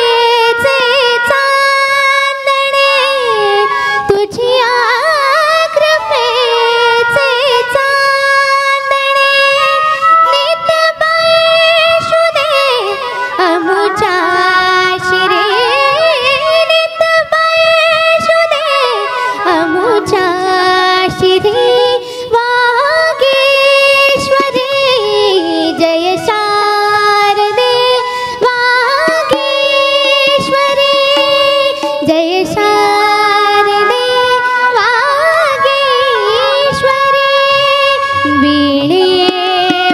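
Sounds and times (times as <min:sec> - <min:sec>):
girl singing wordless melody: 0:00.0 - 0:39.9
steady drone: 0:35.4 - 0:39.9.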